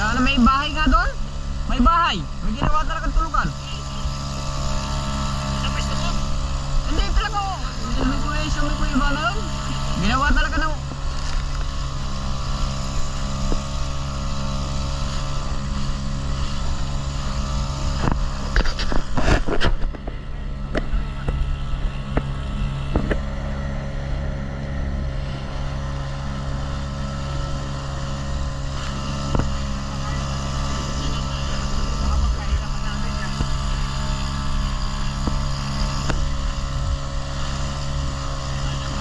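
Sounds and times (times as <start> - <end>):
motorboat engine running: 0.0 - 39.0.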